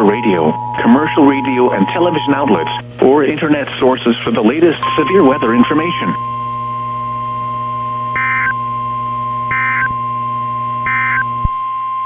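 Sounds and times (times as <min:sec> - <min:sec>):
shrill digital data tones: 0:00.0 - 0:02.8, 0:04.8 - 0:08.7
radio hiss: 0:00.0 - 0:06.3
steady thin tone: 0:04.8 - 0:08.0.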